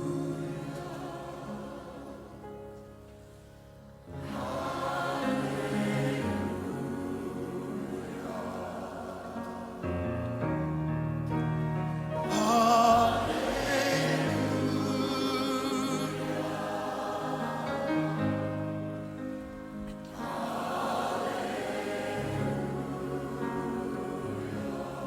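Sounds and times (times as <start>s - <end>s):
person singing with vibrato: 0.0s - 2.3s, 12.2s - 18.5s
keyboard chords: 0.0s - 25.0s.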